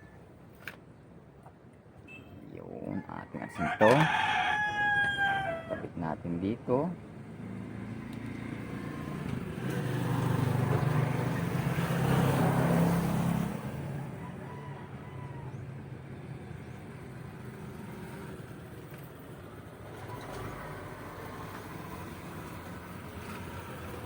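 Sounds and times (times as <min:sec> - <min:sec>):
vehicle engine passing by: 0:07.2 - 0:14.4, 0:15.4 - 0:24.0.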